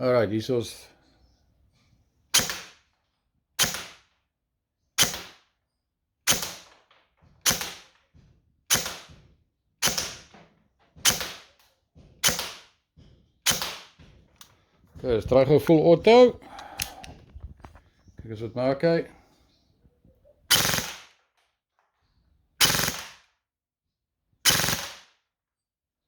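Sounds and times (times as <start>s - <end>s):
airsoft gun shots: 2.4s - 2.8s, 3.6s - 4.0s, 5.0s - 5.4s, 7.4s - 7.9s, 8.7s - 9.2s, 9.8s - 10.3s, 11.0s - 11.5s, 12.2s - 12.7s, 13.5s - 14.0s, 20.5s - 21.1s, 22.6s - 23.2s, 24.4s - 25.1s.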